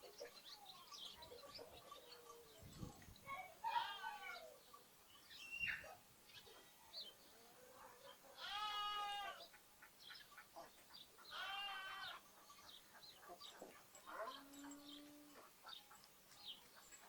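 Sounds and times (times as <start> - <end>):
small birds chirping: 0.0 - 17.0
lamb bleating: 8.4 - 9.4, 11.3 - 12.2.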